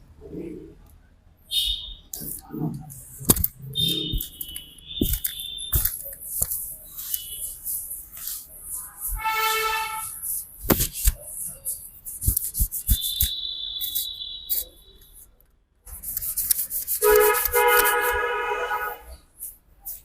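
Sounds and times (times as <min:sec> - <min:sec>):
vehicle horn honking: 0:01.5 - 0:02.1, 0:03.7 - 0:05.8, 0:09.0 - 0:10.2, 0:17.0 - 0:19.2
scratchy rubbing on head: 0:03.1 - 0:14.7, 0:15.9 - 0:18.3.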